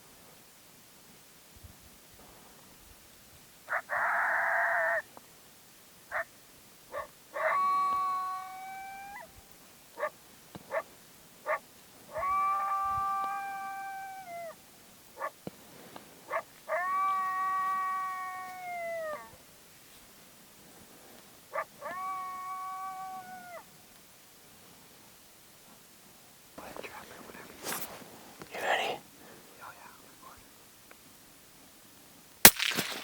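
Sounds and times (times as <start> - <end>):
coyote call barks: 3.7 - 5.1, 6.1 - 14.6, 15.2 - 15.4, 16.3 - 19.4, 21.5 - 23.7
coyote call howls: 3.7 - 5.1, 6.9 - 10.1, 11.5 - 14.6, 16.3 - 19.4, 21.5 - 23.7
raspy bawl: 28.5 - 29.0.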